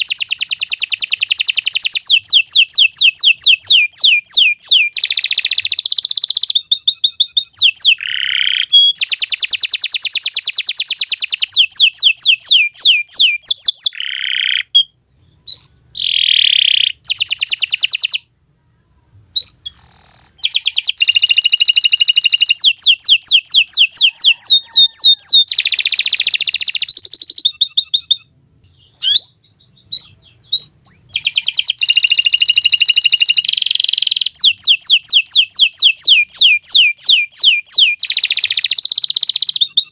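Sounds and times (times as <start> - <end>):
canary singing trills: 0.0 - 18.3, 19.3 - 39.9.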